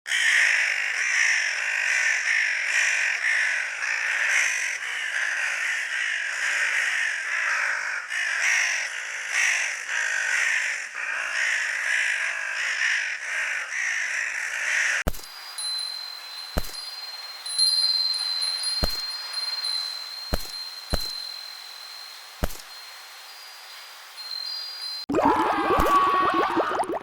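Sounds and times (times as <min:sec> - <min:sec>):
crows cawing: 0:00.1 - 0:15.0.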